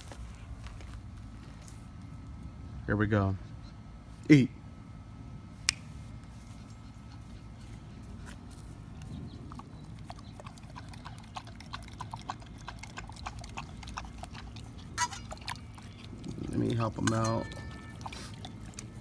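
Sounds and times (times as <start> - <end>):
dog chewing meat and bone: 6.6 - 19.0.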